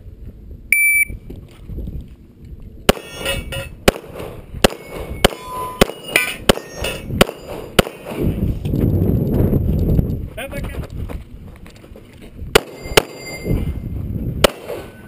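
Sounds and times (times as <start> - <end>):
steel targets ringing: 2.9 - 3.8, 4.7 - 8.1, 12.6 - 13.6
pistol shots: 2.9 - 8.4, 12.5 - 13.4, 14.4 - 15.0.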